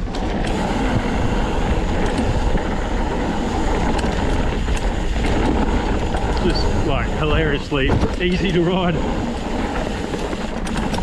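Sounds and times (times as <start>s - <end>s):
faint bike clicks: 0.0s - 6.6s, 9.2s - 11.0s
bike tyres rolling on dirt: 0.0s - 11.0s.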